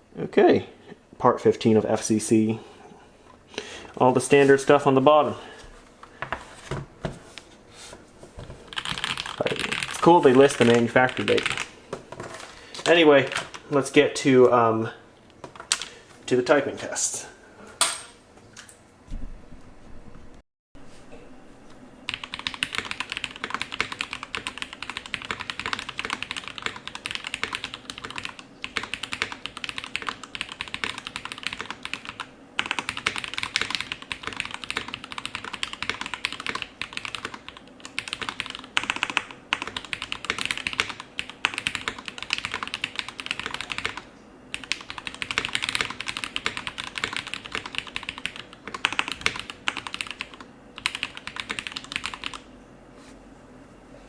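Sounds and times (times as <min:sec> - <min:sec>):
fast typing on a keyboard: 0:08.7 - 0:11.7, 0:13.2 - 0:13.6, 0:22.1 - 0:52.5.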